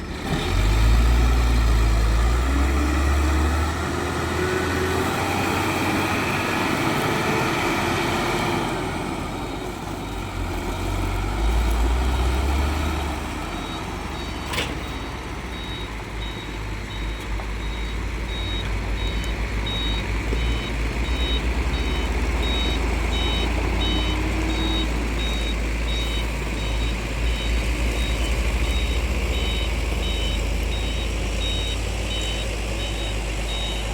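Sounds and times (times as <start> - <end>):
diesel engine rumbling: 0.0 - 33.9
reversing alarm beeping: 12.0 - 33.9.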